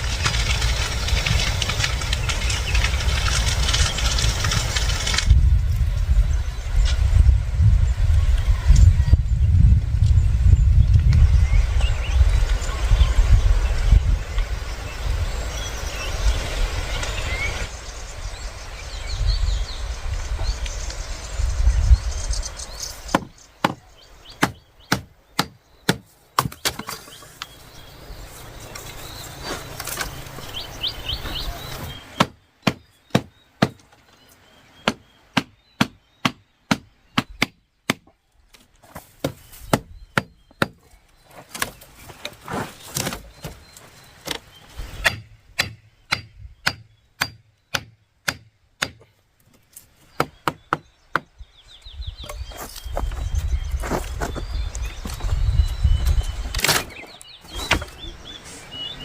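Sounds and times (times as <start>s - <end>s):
sharp strikes on wood: 23.1s - 27.0s, 32.2s - 33.8s, 34.8s - 38.2s, 45.0s - 49.1s.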